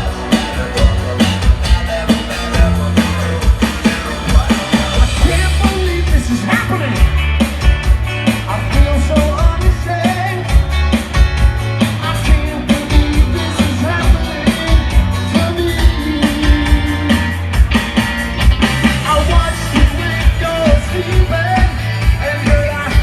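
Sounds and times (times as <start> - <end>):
person singing: 0.0 - 6.9
drum kit beat: 0.0 - 23.0
rock band playing: 0.0 - 23.0.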